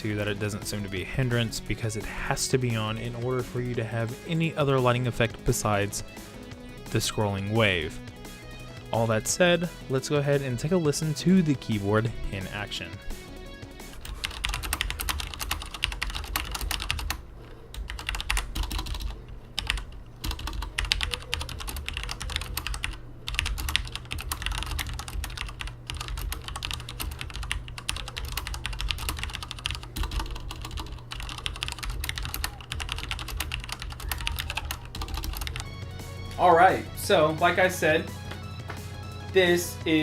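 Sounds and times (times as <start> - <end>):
fast typing on mechanical keyboard: 14.0 - 35.7.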